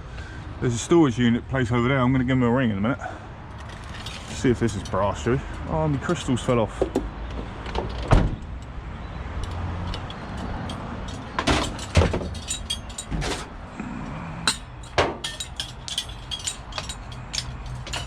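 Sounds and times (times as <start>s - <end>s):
scrap metal knocking and clinking: 9.4s - 18.0s.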